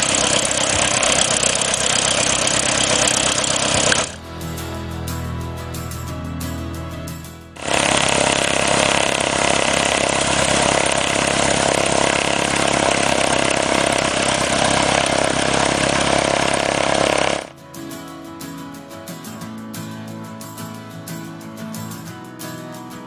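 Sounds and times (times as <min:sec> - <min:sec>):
propeller plane engine drone: 0:00.0 - 0:17.6
guitar music: 0:00.0 - 0:23.0.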